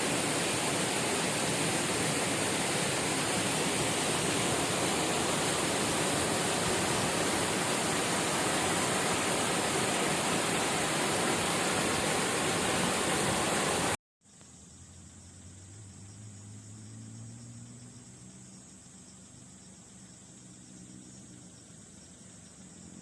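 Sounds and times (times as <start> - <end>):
rushing water: 0.0 - 14.0
quiet outdoor ambience: 0.0 - 23.0.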